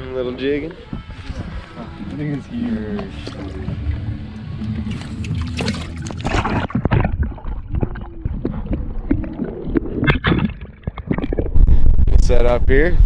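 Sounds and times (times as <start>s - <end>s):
water sloshing against boat: 0.0s - 11.4s
low rumble: 2.7s - 13.0s.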